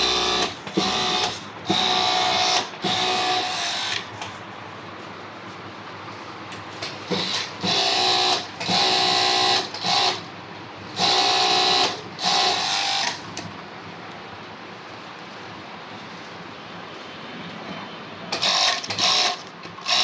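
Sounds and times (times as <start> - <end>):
overlock sewing machine stitching: 0.0 - 2.2.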